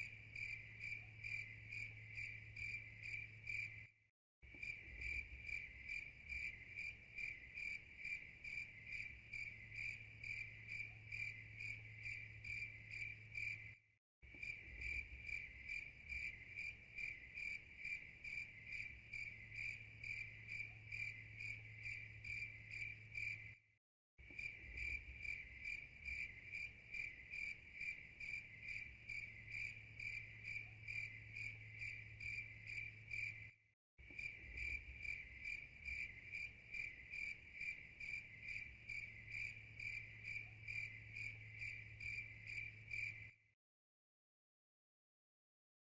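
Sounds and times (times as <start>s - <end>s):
cricket chirping: 0.0s - 23.6s, 24.2s - 43.5s.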